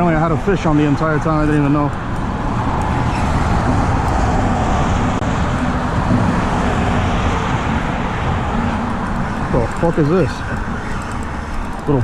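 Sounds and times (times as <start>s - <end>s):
road traffic on bridge: 0.0s - 12.0s.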